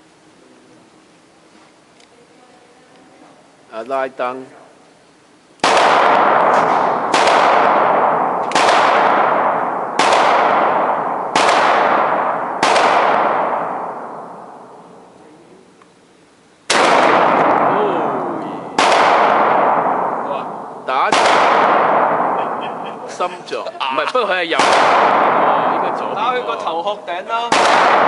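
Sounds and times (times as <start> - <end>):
shotgun shots echoing: 5.6 - 15.1, 16.7 - 23.3, 24.2 - 28.0.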